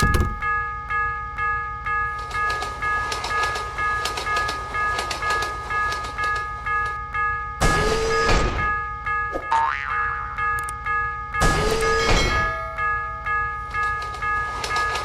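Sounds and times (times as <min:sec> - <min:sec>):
crossing warning bell ringing: 0:00.0 - 0:15.0
train wheels clattering: 0:02.2 - 0:07.0, 0:13.7 - 0:15.0.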